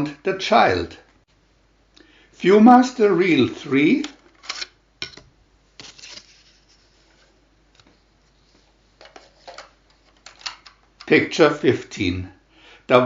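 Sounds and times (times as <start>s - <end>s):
handling rustles and clicks: 5.8s - 11.1s.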